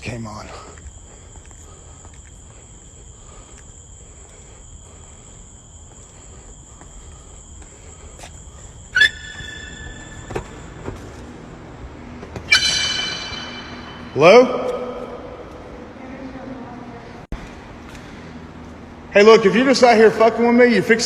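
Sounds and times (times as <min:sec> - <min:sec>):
crickets trilling: 0:00.0 - 0:16.0
loud ringing sound: 0:12.5 - 0:14.6.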